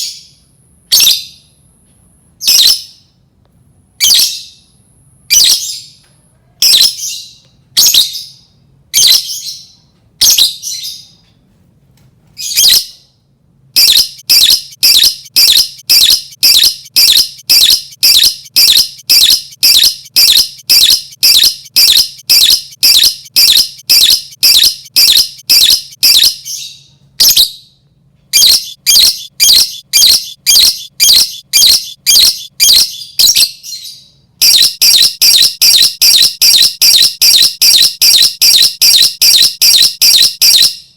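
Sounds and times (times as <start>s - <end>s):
lovebird shrill calls: 13.8s - 26.6s, 28.4s - 33.8s.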